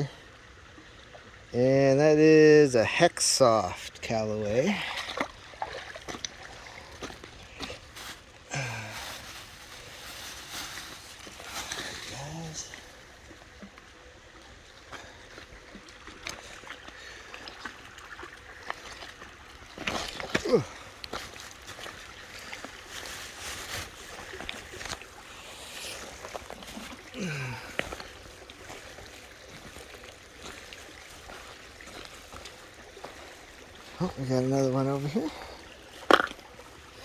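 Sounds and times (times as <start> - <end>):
creek water trickling: 0.0 - 37.0
splashy wading steps: 4.4 - 37.0.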